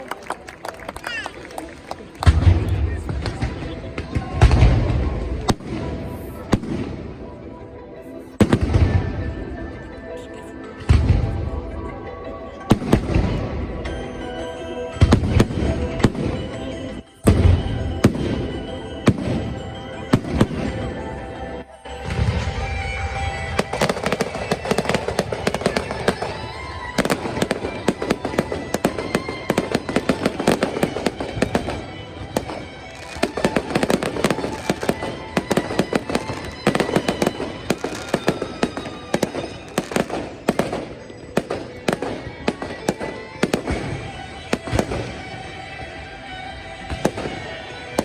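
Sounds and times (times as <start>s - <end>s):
fireworks popping and crackling: 0.0s - 7.0s, 21.9s - 45.8s, 46.8s - 48.0s.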